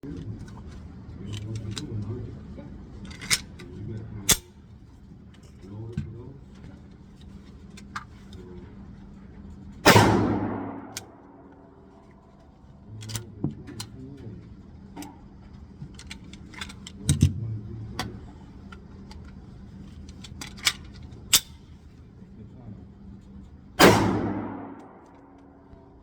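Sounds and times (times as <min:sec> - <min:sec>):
loud gunshot: 0:09.9 - 0:11.3, 0:23.8 - 0:25.0.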